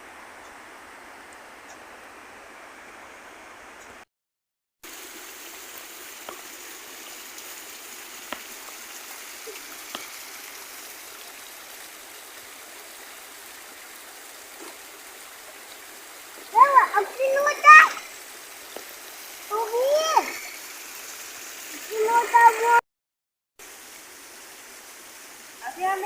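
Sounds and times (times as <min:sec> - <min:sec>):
creek water running: 0:04.8 - 0:22.8, 0:23.6 - 0:26.0.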